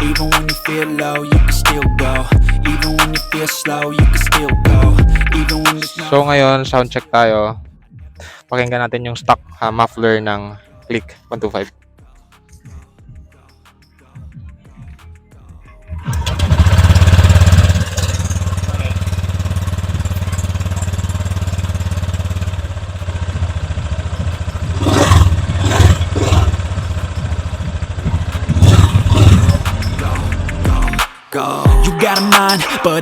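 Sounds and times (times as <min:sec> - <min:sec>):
scooter engine idling and revving: 0:16.0 - 0:31.0.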